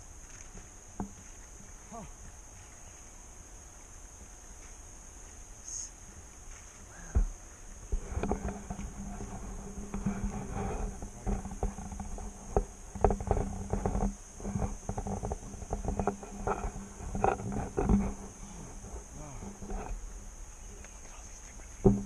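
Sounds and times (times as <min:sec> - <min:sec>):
high-pitched insect chorus: 0:00.0 - 0:22.0
low hum: 0:05.5 - 0:22.0
footsteps on wooden bridge: 0:06.1 - 0:18.4.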